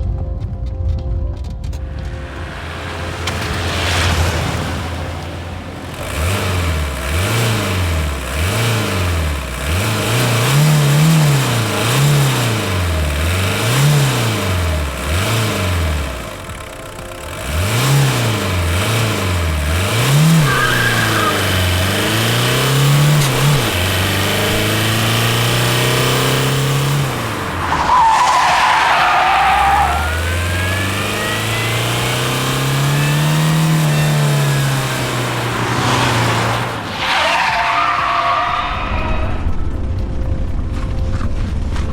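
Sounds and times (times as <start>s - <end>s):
car engine revving: 1.6s - 40.3s
tyre squeal: 19.8s - 39.5s.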